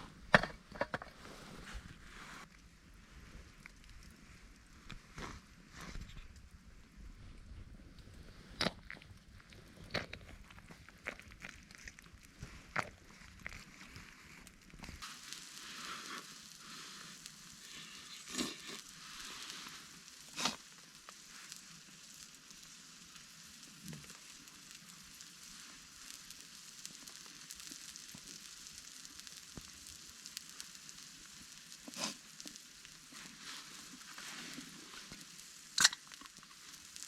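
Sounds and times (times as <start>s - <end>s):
food sizzling in a pot: 15.0s - 37.0s.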